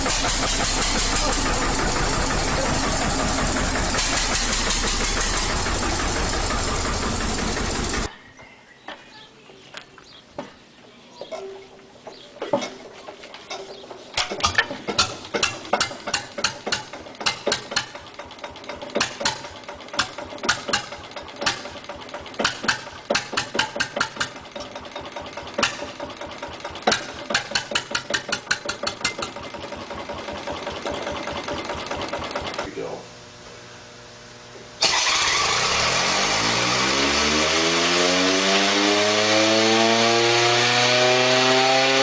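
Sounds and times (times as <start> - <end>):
small diesel engine knocking: 0.0 - 8.1, 15.0 - 32.7.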